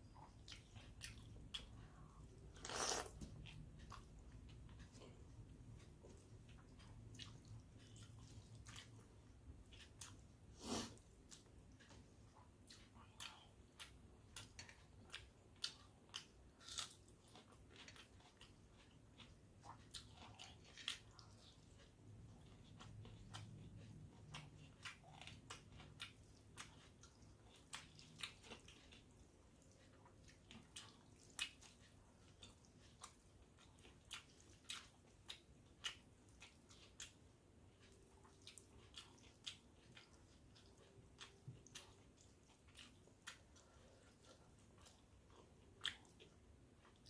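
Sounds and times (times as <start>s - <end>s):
person chewing wetly: 0.0s - 47.0s.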